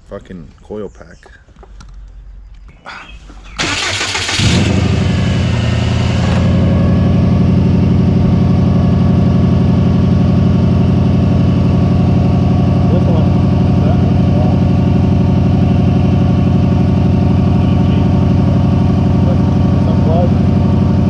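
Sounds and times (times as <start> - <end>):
starter cranking engine: 3.6 - 6.6
car engine idling with misfire: 3.6 - 21.0.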